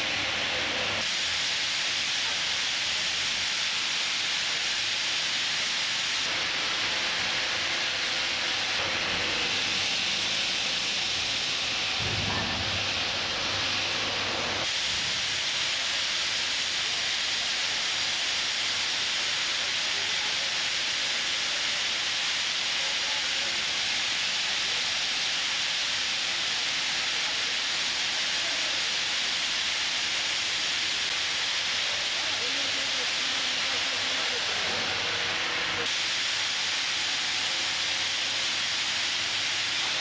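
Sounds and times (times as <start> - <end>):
stone cutting machine rushing noise: 6.6 - 14.6.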